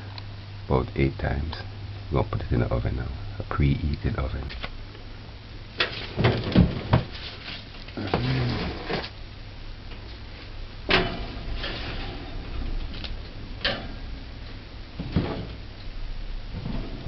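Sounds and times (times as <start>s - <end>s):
oven door opening and shutting: 5.8s - 7.4s, 10.9s - 15.7s, 16.5s - 17.0s
metal knocks and clanks: 10.9s - 12.5s, 15.0s - 15.6s.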